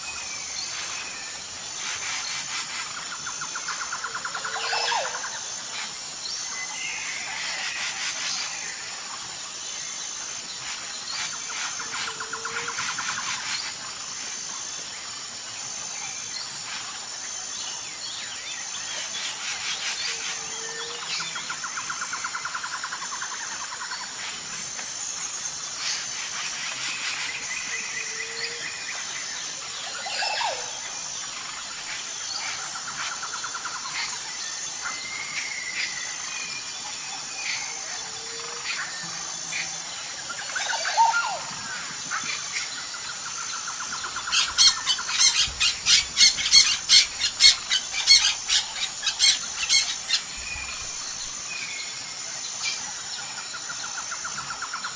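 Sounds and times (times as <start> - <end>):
pulsing insect trill: 0.0 - 54.9
birds chirping and calling: 37.4 - 52.0.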